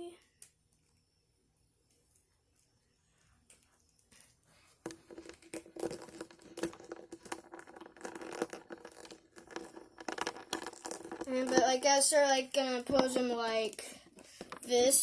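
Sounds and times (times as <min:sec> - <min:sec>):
plastic figure clicks and rustles: 0:03.4 - 0:15.0.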